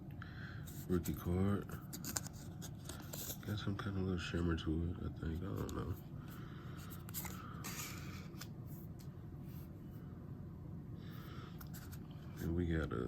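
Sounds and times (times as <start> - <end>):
low steady hum: 0.0 - 13.0
cards sliding and rustling: 1.8 - 3.5, 6.8 - 9.1, 11.6 - 12.1.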